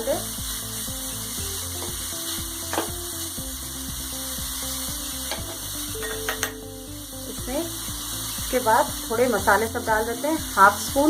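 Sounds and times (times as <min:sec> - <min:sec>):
soft background music: 0:00.0 - 0:11.0
vegetables frying in oil: 0:00.0 - 0:11.0
spoon knocking against pan: 0:02.7 - 0:03.0, 0:05.3 - 0:06.7.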